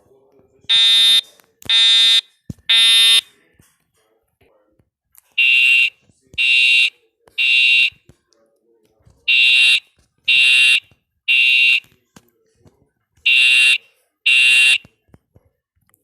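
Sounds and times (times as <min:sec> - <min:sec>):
fire alarm horn blasts: 0:00.7 - 0:03.3, 0:05.4 - 0:08.0, 0:09.3 - 0:11.9, 0:13.2 - 0:14.9.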